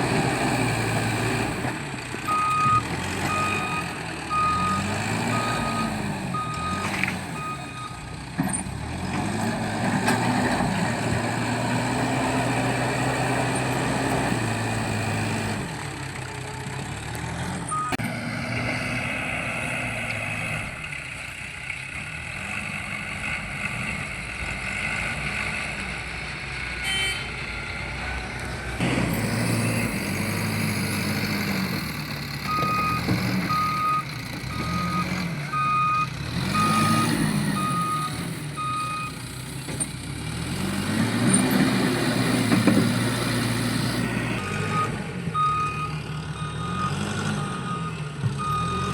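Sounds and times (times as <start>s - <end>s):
diesel engine working hard: 0.0s - 48.9s
reversing alarm beeping: 2.3s - 8.0s, 32.5s - 39.2s, 44.4s - 48.9s.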